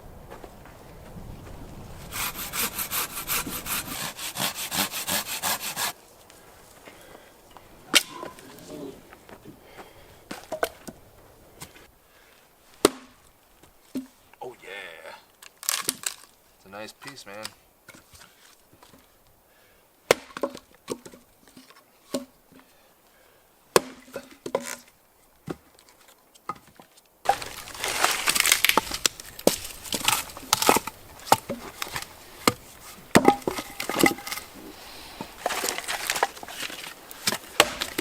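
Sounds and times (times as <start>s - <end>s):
firewood cracking and knocking: 15.3s - 16.4s, 23.8s - 34.5s, 35.2s - 38.0s
wood crackling and snapping: 15.3s - 19.3s, 25.6s - 34.6s, 35.2s - 38.0s.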